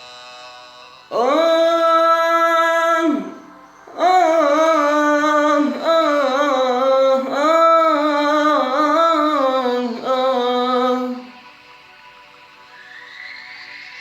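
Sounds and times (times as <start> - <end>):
person humming nasal melody: 1.1 - 11.5.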